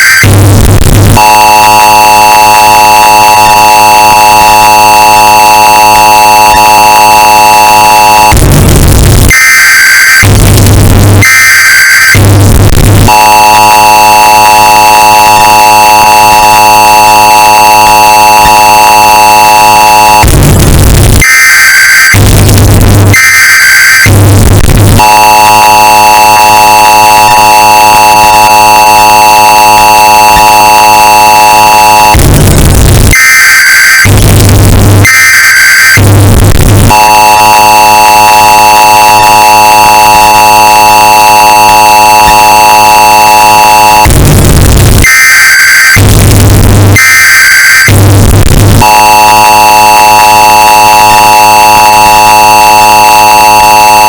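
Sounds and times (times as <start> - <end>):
data header screech: 0.0 - 8.3, 23.7 - 32.5, 36.9 - 44.2, 48.8 - 54.0
two-tone attention signal: 0.1 - 8.4, 9.2 - 20.4, 23.6 - 32.3, 36.8 - 44.2, 48.8 - 54.0.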